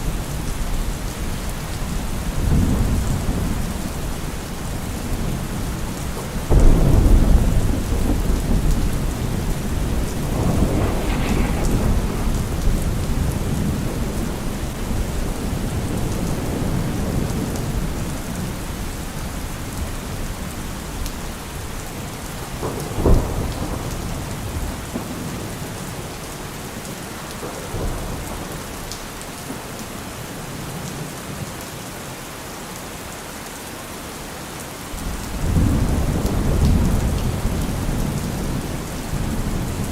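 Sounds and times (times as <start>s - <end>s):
steady rain: 0.0s - 39.9s
sharp thunder clap: 6.5s - 16.8s
thunder rumbling: 6.5s - 18.0s.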